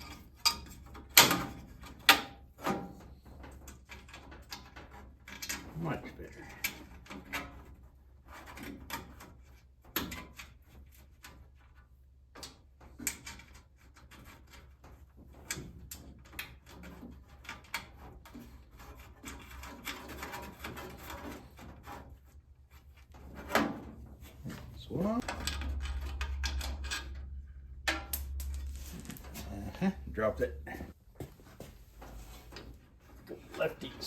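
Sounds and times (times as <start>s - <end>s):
metal hardware clicking and rustling: 23.3s - 29.8s.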